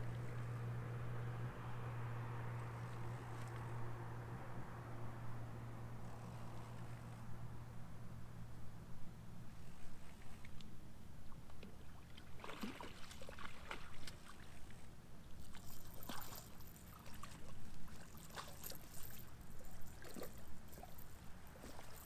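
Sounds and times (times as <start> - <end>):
fish splashing in water: 11.8 - 14.8.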